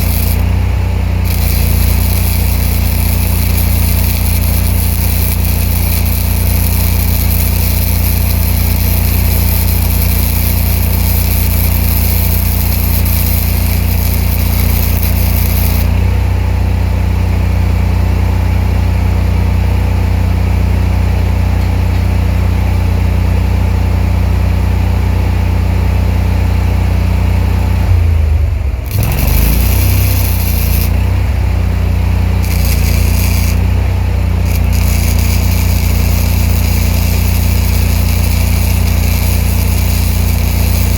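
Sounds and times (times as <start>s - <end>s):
welding arc sizzling: 0.0s - 16.2s, 28.8s - 40.9s
engine running: 0.0s - 40.9s.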